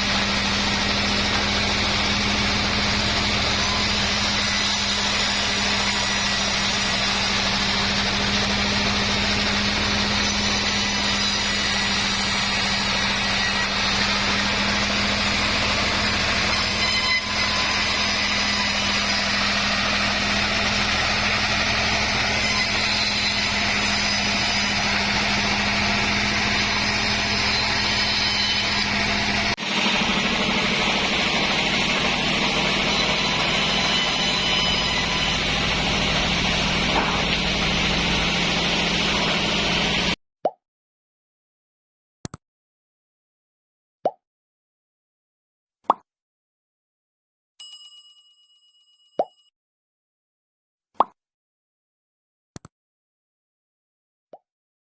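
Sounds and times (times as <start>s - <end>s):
sawmill machinery drone: 0.0s - 40.2s.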